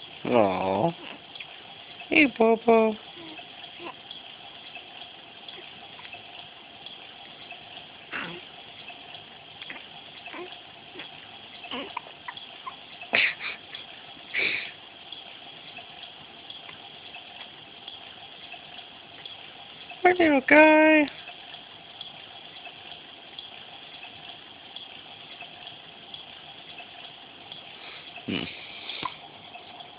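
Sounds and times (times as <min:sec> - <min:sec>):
steady background hiss: 0:00.0 - 0:29.9
baby hiccupping: 0:01.0 - 0:01.3, 0:03.2 - 0:04.0, 0:08.1 - 0:08.6, 0:09.6 - 0:12.8.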